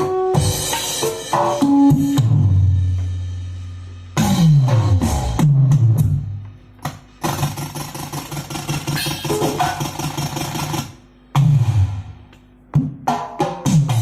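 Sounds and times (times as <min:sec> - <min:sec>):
electronic percussion pad hits: 0:08.6 - 0:10.8.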